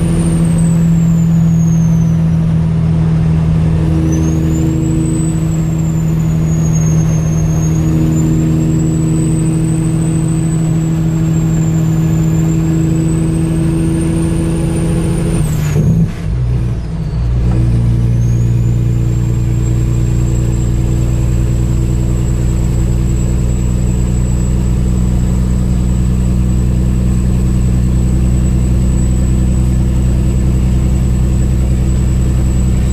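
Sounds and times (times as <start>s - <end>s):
diesel truck engine running: 0.0s - 32.9s
thin high whine: 3.4s - 13.6s.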